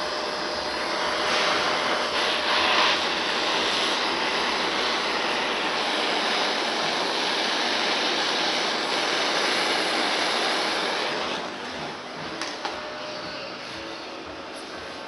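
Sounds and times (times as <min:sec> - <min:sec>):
gas torch flame hissing: 0:00.0 - 0:15.0.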